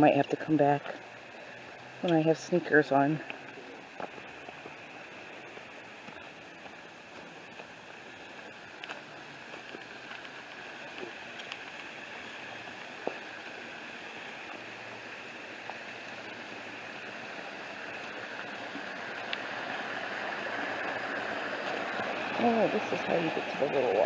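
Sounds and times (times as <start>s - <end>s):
water rushing from small waterfalls: 7.1s - 24.0s
faint clicks: 9.6s - 11.9s.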